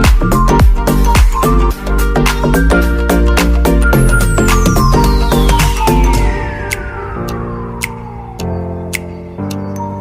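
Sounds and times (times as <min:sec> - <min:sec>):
falling whistle-like electronic tone: 0:03.9 - 0:09.3
sustained low notes: 0:04.1 - 0:09.6
sharp electronic tick: 0:05.8 - 0:09.9.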